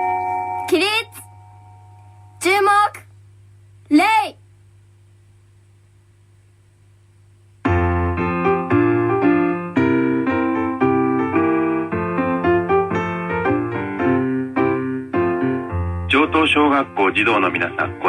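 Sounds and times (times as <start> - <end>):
piano chords: 0.0 - 2.4, 7.6 - 18.0
faint low hum: 0.0 - 18.0.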